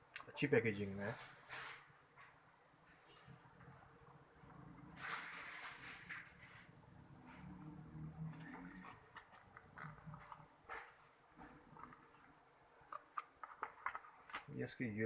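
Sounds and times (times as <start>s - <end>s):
cardboard and paper rustling: 2.9s - 14.8s.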